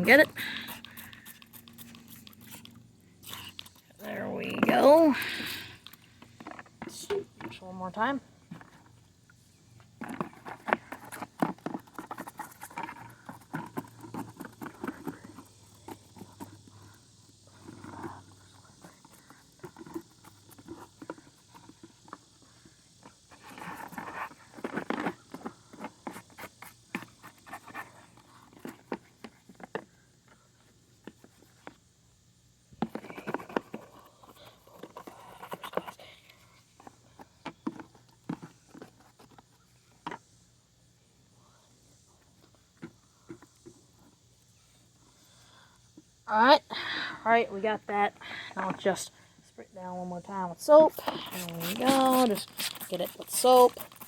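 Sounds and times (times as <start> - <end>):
scrubbing mower parts: 0.0 - 9.1, 50.7 - 54.0.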